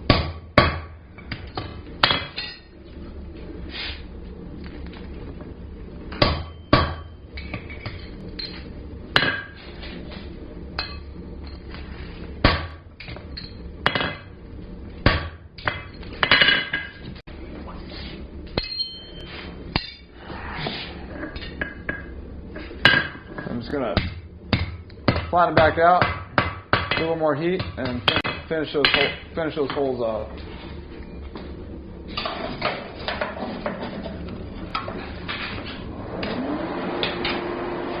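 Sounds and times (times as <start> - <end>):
low hum: 0.0 - 25.3, 27.6 - 38.0
hammer striking punch on steel: 0.1 - 2.6, 6.2 - 7.1.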